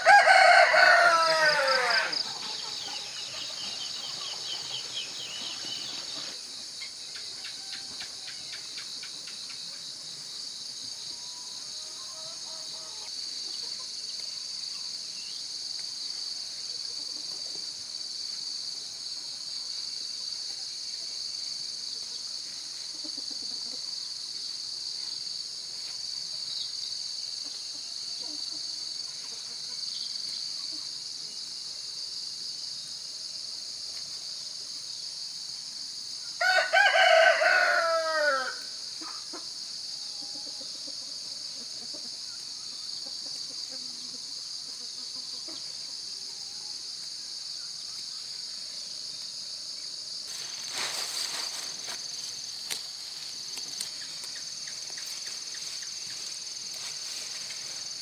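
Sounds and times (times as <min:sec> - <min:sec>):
rooster crowing: 0:00.0 - 0:03.3, 0:36.4 - 0:38.7
insects chorus: 0:00.0 - 0:58.0.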